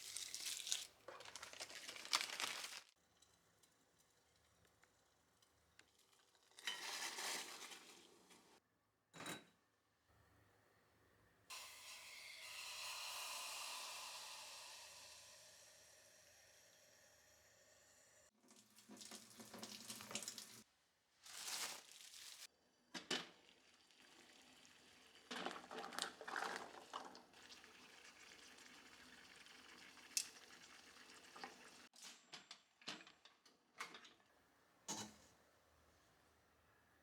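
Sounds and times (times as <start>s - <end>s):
tap water running into sink: 18.5s - 20.6s.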